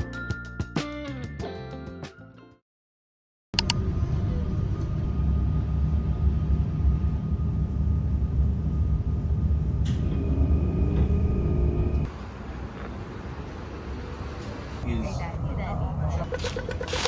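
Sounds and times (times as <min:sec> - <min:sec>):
vehicle rumble: 0:03.6 - 0:17.0.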